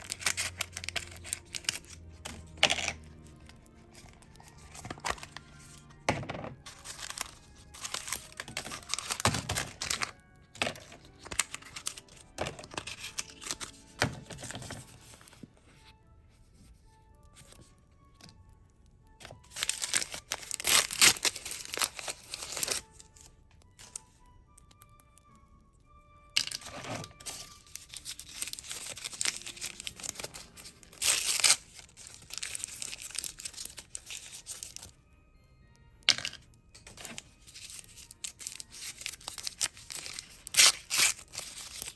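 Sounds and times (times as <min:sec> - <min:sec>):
plastic packaging crinkling and tearing: 0:00.0 - 0:05.9, 0:06.6 - 0:15.4, 0:19.2 - 0:24.1, 0:26.5 - 0:35.0, 0:36.9 - 0:41.9
light background music: 0:00.0 - 0:41.9.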